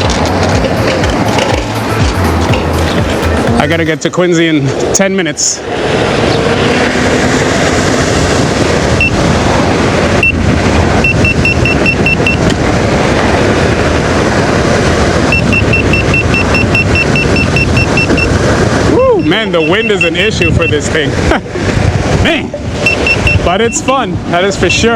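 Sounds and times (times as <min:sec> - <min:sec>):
wind rushing over microphone: 0:00.0 - 0:24.9
high-pitched alarm beeping: 0:10.2 - 0:10.4, 0:11.0 - 0:12.5, 0:15.3 - 0:18.4, 0:19.1 - 0:20.8, 0:22.8 - 0:23.9.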